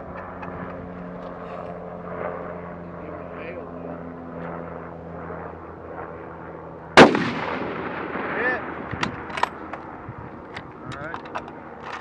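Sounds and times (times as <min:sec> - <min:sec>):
rifle shot with echo: 0:07.0 - 0:09.6.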